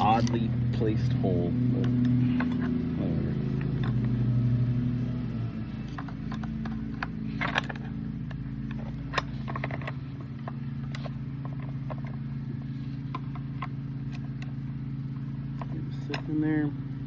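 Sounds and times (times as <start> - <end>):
low engine hum: 0.0 - 17.0.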